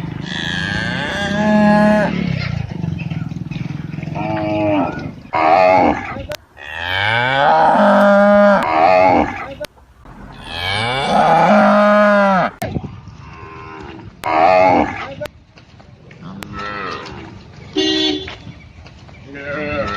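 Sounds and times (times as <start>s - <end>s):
cattle mooing: 0.1s - 2.4s, 4.0s - 12.6s, 13.3s - 15.2s, 16.2s - 17.3s, 19.3s - 19.9s.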